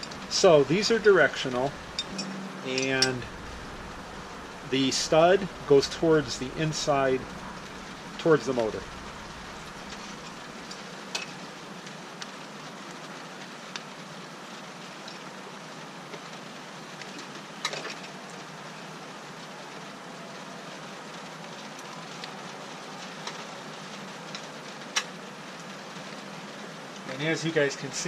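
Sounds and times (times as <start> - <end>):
rain falling: 0.0 - 28.0.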